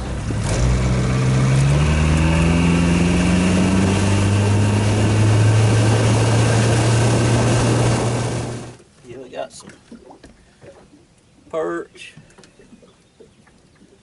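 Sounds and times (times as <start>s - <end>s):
boat motor throttling up: 0.0s - 8.8s.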